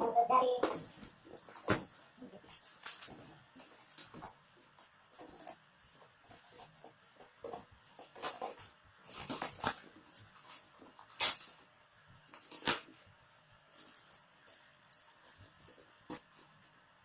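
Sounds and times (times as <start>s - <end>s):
objects rustling and clicking: 0.6s - 13.0s, 13.6s - 16.5s.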